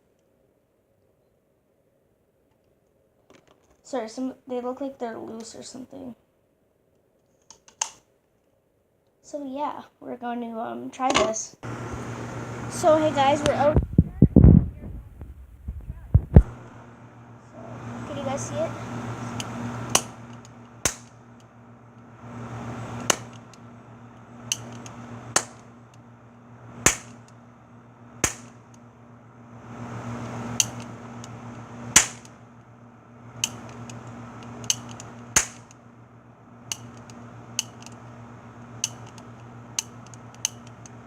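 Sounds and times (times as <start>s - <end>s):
cap gun pops: 20.8s - 21.1s, 26.9s - 27.2s, 28.2s - 28.6s, 32.0s - 32.3s, 35.4s - 35.7s.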